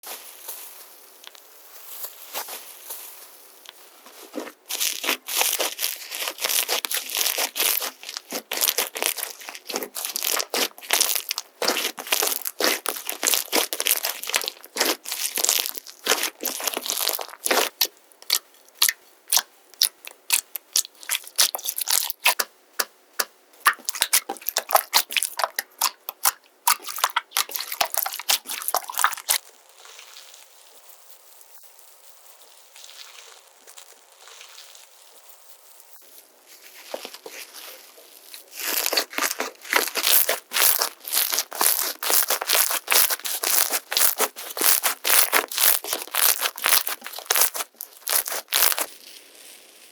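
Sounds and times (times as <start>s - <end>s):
slime crackling and popping: 3.7s - 36.0s, 38.1s - 49.9s.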